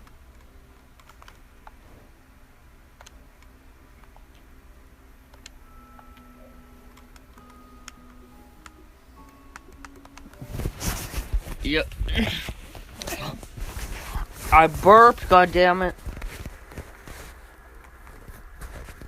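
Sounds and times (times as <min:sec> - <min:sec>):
faint irregular clicks: 0:00.0 - 0:01.8, 0:03.0 - 0:04.5, 0:05.3 - 0:06.3, 0:06.9 - 0:10.4
low hum: 0:00.0 - 0:19.0
faint held tones: 0:05.6 - 0:10.5.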